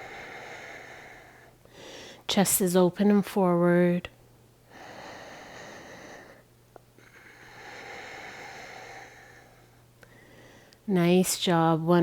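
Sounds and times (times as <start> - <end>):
woman breathing deeply: 0.0 - 2.3, 4.7 - 10.9.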